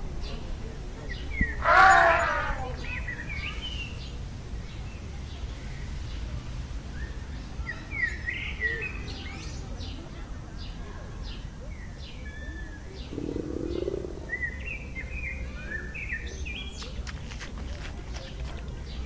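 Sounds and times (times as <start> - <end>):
birds chirping: 0.2 - 4.2, 11.2 - 19.0.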